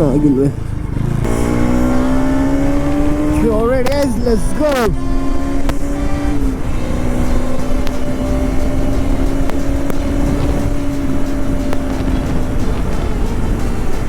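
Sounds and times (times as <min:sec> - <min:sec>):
low rushing noise: 0:00.0 - 0:14.0
motorcycle engine running: 0:00.0 - 0:14.0.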